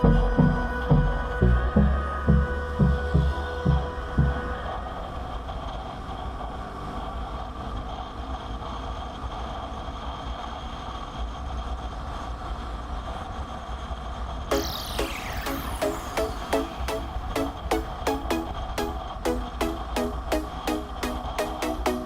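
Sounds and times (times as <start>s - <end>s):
motorcycle engine and road noise: 4.6s - 10.0s.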